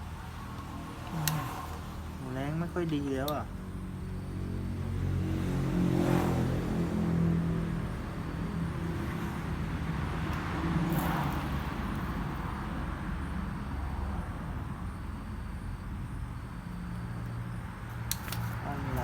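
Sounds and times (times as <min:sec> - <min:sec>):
vehicle passing by: 0:00.0 - 0:03.2, 0:03.8 - 0:15.0, 0:18.4 - 0:19.0
background traffic: 0:00.0 - 0:19.0.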